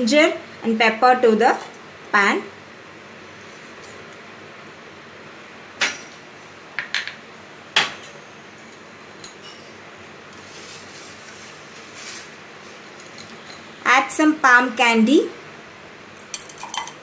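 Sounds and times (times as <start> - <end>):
utensils knocking on a saucepan: 16.2 - 17.0.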